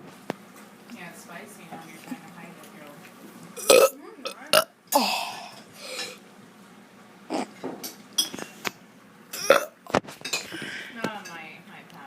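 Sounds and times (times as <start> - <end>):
mouth and throat noises: 7.3 - 7.6.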